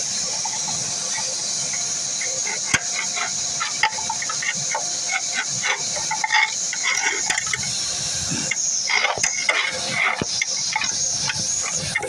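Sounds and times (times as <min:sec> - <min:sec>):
vacuum hose rushing air: 0:00.0 - 0:12.0.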